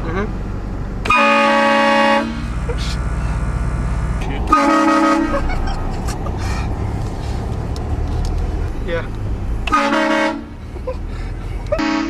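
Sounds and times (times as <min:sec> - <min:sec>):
car engine rumbling: 0:00.0 - 0:12.0
air horn chord blasts: 0:01.1 - 0:02.6, 0:03.8 - 0:05.6, 0:09.7 - 0:10.4.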